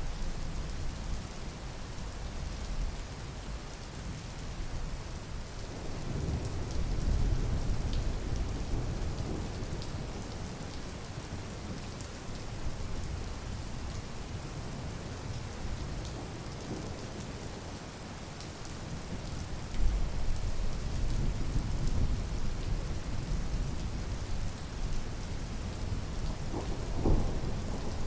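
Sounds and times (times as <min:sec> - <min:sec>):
steady rain pattering: 0:00.0 - 0:28.0
thunder rumble: 0:26.4 - 0:28.0.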